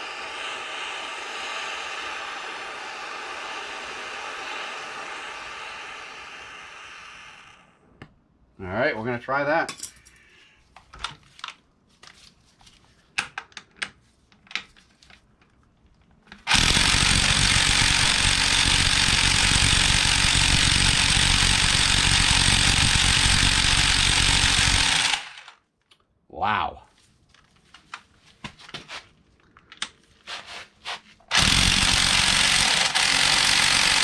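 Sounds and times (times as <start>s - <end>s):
impact wrench hammering: 31.3s - 34.0s.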